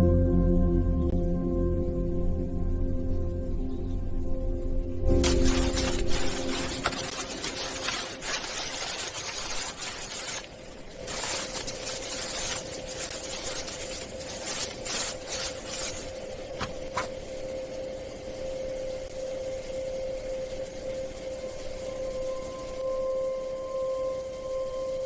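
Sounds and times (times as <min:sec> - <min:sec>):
faint steady hum: 0:00.0 - 0:25.0
scraping and rasping: 0:05.2 - 0:17.1.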